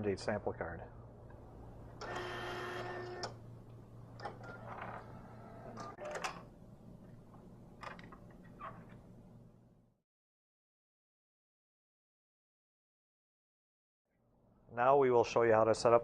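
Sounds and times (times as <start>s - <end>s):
printer motor whine: 2.0s - 3.4s, 4.2s - 6.3s
printer whirs and clicks: 2.0s - 3.4s, 4.2s - 6.4s.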